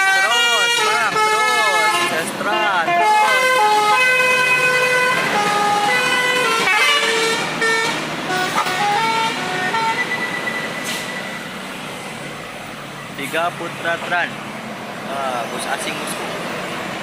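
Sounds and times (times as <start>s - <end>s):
musical air horns playing tune: 0.0s - 10.2s
bus engine: 0.0s - 17.0s
road noise: 0.0s - 17.0s.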